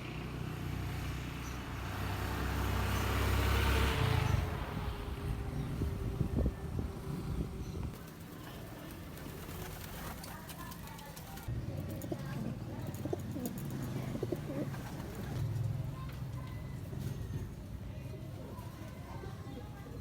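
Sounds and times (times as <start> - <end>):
pigeons cooing: 11.9 - 15.8.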